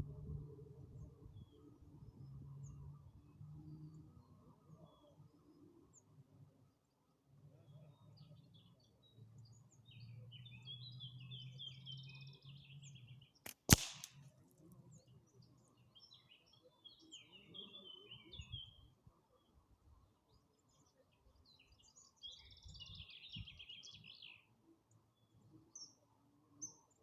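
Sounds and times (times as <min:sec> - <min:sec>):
suppressed rifle shot: 0:13.5 - 0:14.2.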